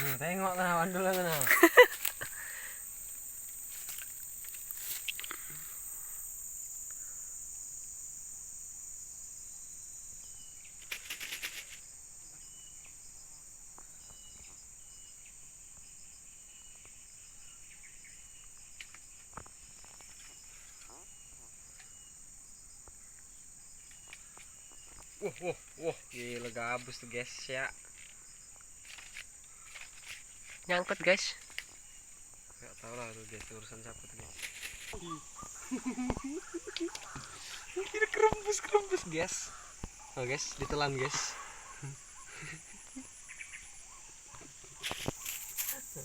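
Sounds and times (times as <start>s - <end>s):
insects chirring: 0.0s - 46.0s
rattle of quick clicks: 10.8s - 11.8s.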